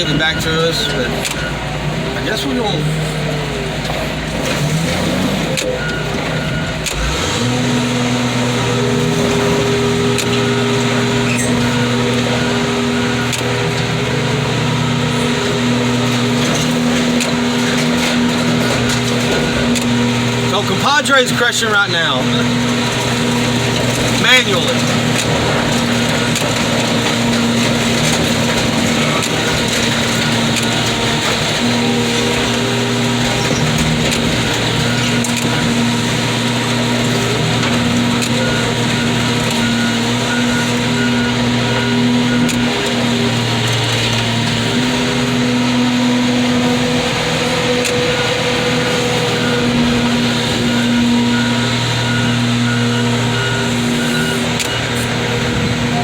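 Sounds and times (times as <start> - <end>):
diesel engine and hydraulic drone: 0.0 - 56.0
faint cracks of crushed scrap: 22.4 - 53.0.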